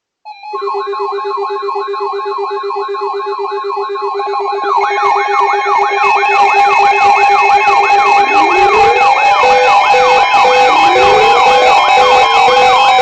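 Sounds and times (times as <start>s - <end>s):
electronic warbling siren: 4.8s - 13.0s
pulsing low hum: 7.7s - 11.8s.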